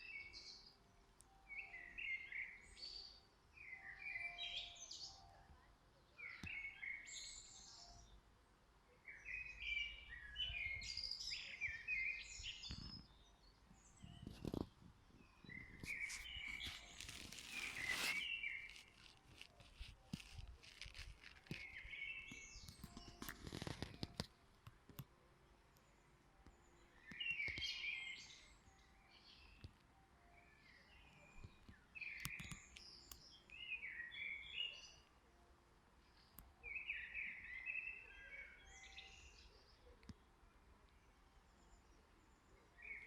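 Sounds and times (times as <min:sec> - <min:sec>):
rustle with clicks: 0:15.8 - 0:25.1.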